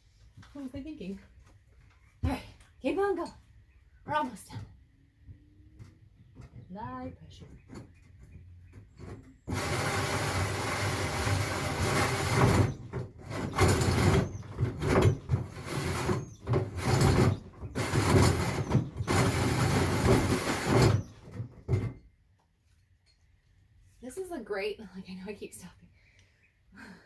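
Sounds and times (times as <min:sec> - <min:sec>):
power drill cutting a hole: 0:09.5 - 0:21.3.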